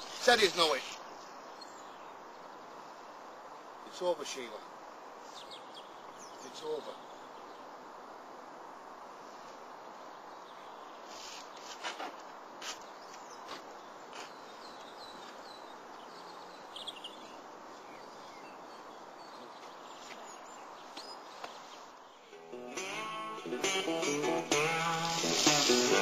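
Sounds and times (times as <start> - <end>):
faint bird chirps: 0.0 - 3.4, 5.2 - 7.7, 12.7 - 22.4
outdoor background noise: 0.0 - 26.0.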